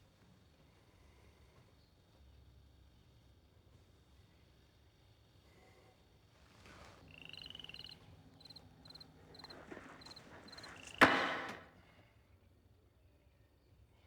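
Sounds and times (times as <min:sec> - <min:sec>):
faint high chirps: 0:07.1 - 0:11.6.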